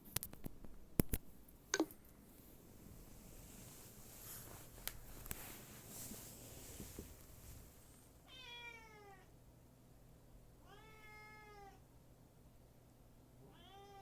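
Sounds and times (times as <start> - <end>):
cat meowing faintly: 10.6 - 11.8, 13.4 - 14.0.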